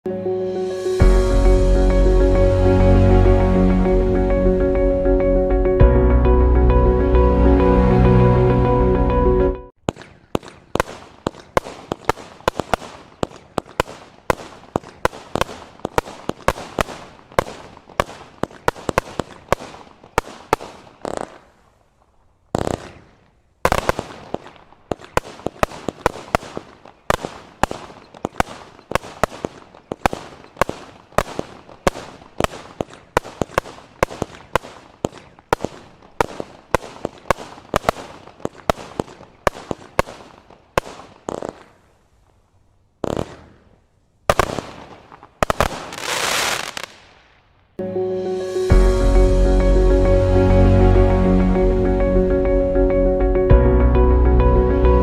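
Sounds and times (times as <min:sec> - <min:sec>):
firework sharp bangs: 0:09.8 - 0:21.6, 0:22.5 - 0:41.9, 0:43.0 - 0:47.3.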